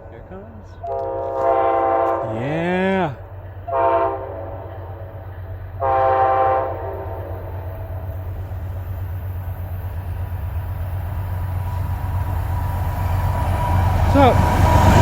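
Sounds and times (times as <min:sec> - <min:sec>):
locomotive horn blast: 0:00.0 - 0:05.0, 0:05.8 - 0:08.0
train rumble: 0:00.0 - 0:15.0.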